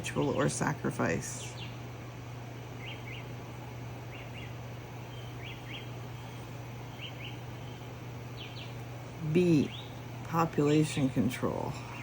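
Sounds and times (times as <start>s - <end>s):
small bird chirping: 1.3s - 1.9s, 2.7s - 3.4s, 4.0s - 10.2s.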